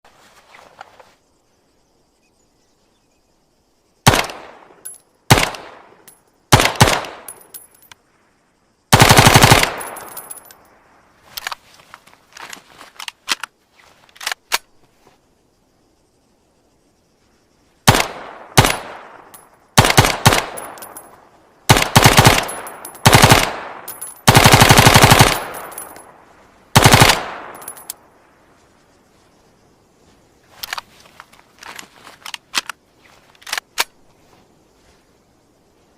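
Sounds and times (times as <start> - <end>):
rifle shots and automatic bursts: 4.0 - 4.6, 5.3 - 5.8, 6.5 - 7.4, 8.9 - 10.3, 17.9 - 21.0, 21.7 - 26.0, 26.7 - 27.9.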